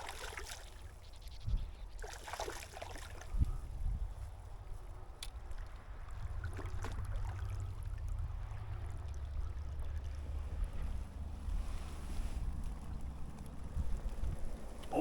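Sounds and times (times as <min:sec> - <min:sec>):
faint splashes: 0:00.0 - 0:01.0, 0:02.0 - 0:03.3, 0:05.3 - 0:14.2
river water flowing: 0:00.0 - 0:01.0
wind rumble on microphone: 0:00.7 - 0:02.0, 0:02.7 - 0:15.0.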